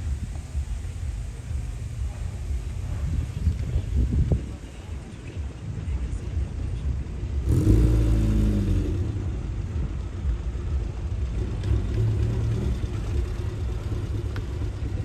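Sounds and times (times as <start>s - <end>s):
low engine rumble: 0.0s - 15.0s
motor vehicle engine passing: 7.1s - 15.0s.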